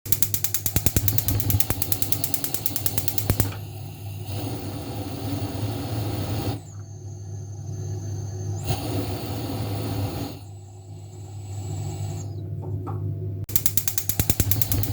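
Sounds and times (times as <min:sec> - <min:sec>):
gas stove igniter ticking: 0:00.1 - 0:06.3, 0:13.5 - 0:14.9
gas burner low steady sound: 0:00.1 - 0:14.9.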